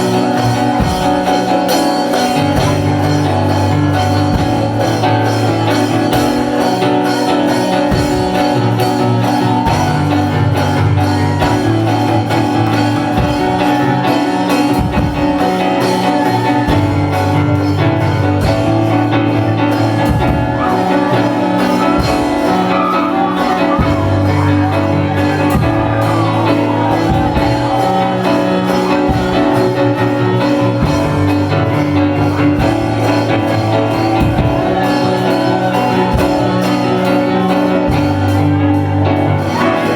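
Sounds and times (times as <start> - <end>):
worship band music: 0.0 - 39.9.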